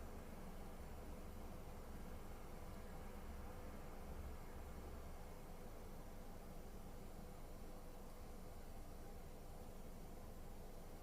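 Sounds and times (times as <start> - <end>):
faint hiss: 0.0 - 11.0.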